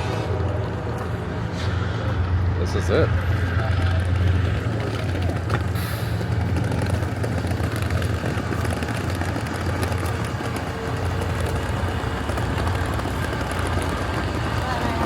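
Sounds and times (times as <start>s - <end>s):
engine idling: 0.0s - 15.0s.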